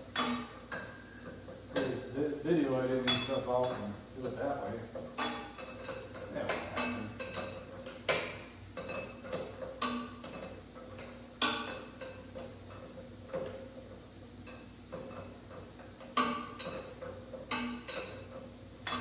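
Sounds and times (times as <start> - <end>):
metal tools clanking: 3.0 - 3.9.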